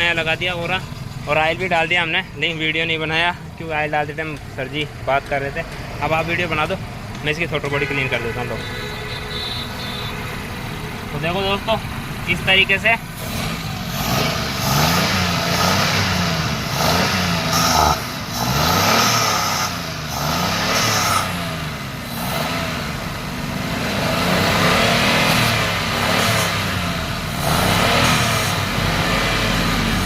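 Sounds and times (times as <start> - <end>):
car engine revving: 9.3 - 30.0.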